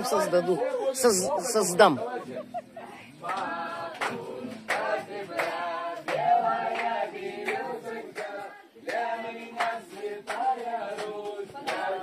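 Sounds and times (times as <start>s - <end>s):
group singing unaccompanied: 0.0s - 12.0s.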